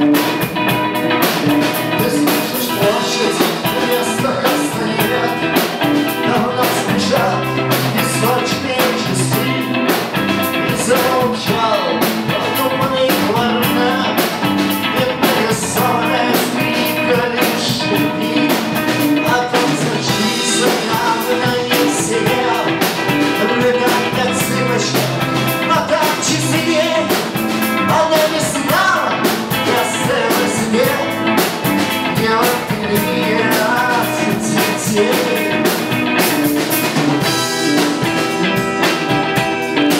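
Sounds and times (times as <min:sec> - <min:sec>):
rock music led by guitar: 0:00.0 - 0:39.9
steady drum beat: 0:00.0 - 0:39.9.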